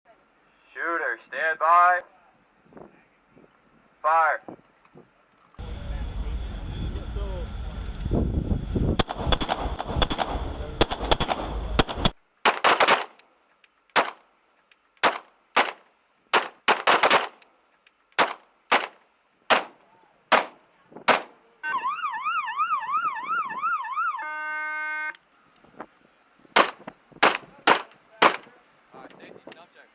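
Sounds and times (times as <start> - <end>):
wind on microphone: 2.6 - 12.1
pistol shots: 9.0 - 13.2, 14.0 - 14.2, 15.0 - 17.4, 18.2 - 21.4, 26.6 - 28.5
warbling high tone: 21.6 - 25.2.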